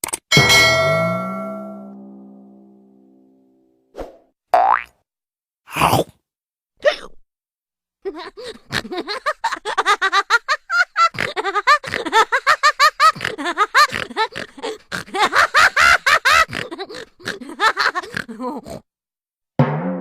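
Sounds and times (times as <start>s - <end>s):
twanging note: 0.3s - 3.6s.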